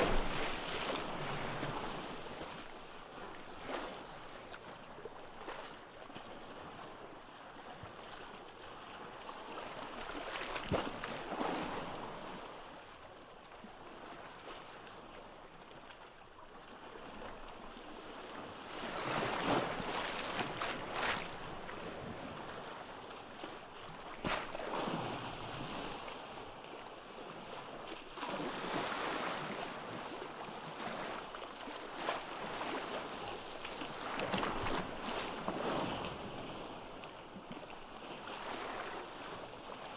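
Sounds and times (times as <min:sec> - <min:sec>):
ocean waves breaking on beach: 0:00.0 - 0:04.0.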